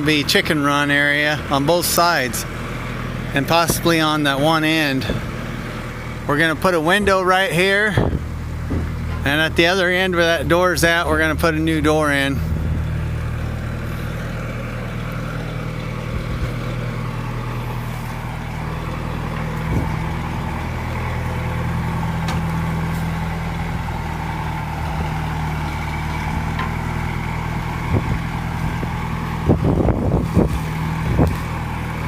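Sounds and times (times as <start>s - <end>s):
vehicle engine idling: 0.0s - 32.0s
short knocks: 7.9s - 9.3s.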